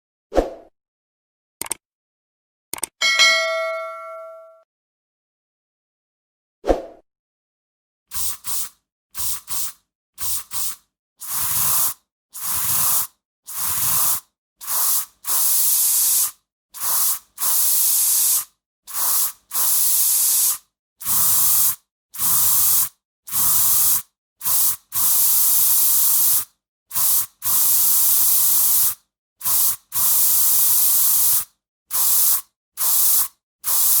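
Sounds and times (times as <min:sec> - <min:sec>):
aerosol spray can hissing: 0:08.1 - 0:34.0.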